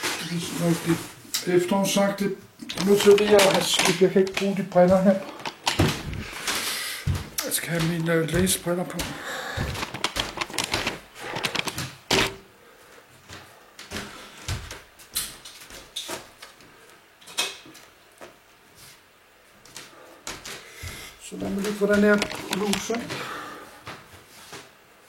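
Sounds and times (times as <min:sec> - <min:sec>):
clicks and knocks of handling: 0:02.6 - 0:06.0, 0:07.4 - 0:12.4, 0:21.6 - 0:23.2.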